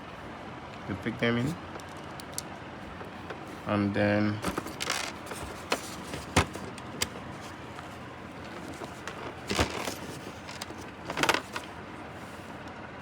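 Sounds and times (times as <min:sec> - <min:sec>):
plastic lock parts clicking: 0:01.8 - 0:02.5.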